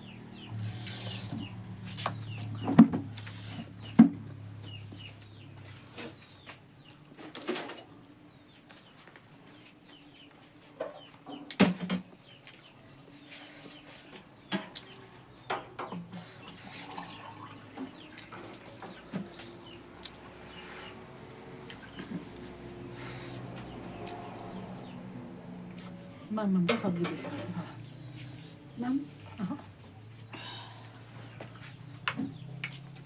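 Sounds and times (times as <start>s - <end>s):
chewing: 16.6s - 21.0s, 21.6s - 26.2s.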